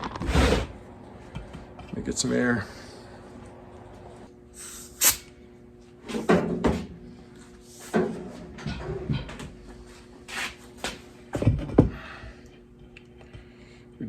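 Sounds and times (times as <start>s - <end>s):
faint steady hum: 6.9s - 14.0s.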